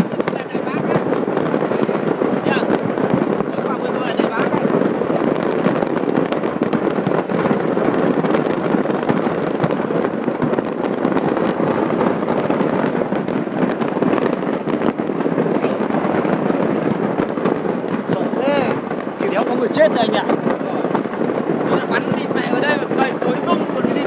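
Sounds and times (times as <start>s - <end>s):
fireworks explosions crackling: 0.0s - 24.0s.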